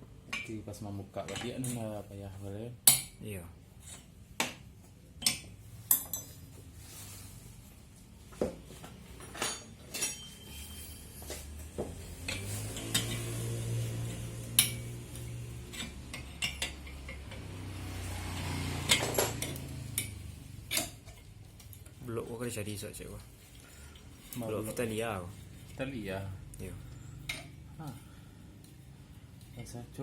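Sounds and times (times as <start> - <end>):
metal tools clinking: 9.2 - 17.5.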